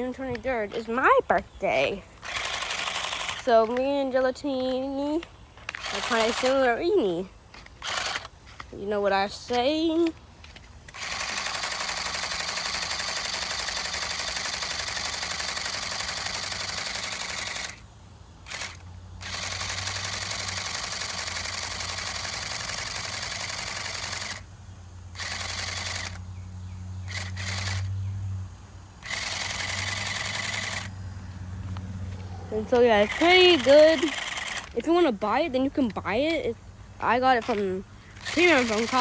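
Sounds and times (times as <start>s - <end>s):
low motor hum: 0.0s - 39.0s
water gun spraying water: 5.7s - 6.8s, 10.9s - 17.8s, 18.5s - 24.4s, 25.2s - 26.2s, 29.0s - 30.9s, 32.5s - 35.1s, 37.0s - 39.0s.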